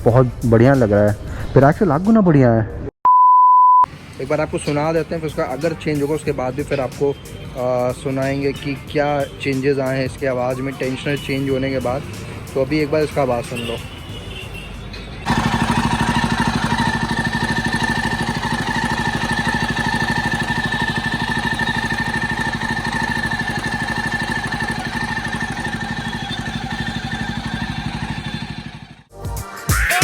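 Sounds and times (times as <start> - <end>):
motorcycle engine idling: 3.9 - 14.2, 15.2 - 29.1
engine whine: 15.2 - 29.1.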